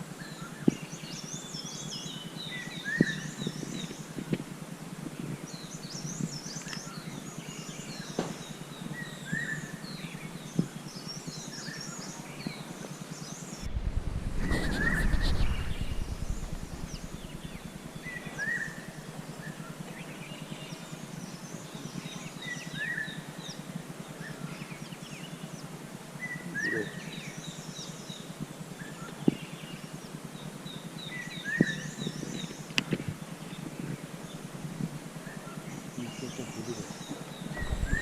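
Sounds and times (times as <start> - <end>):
low rumble: 13.6 - 18.4, 37.5 - 38.0
bird sweeping call: 13.7 - 18.8.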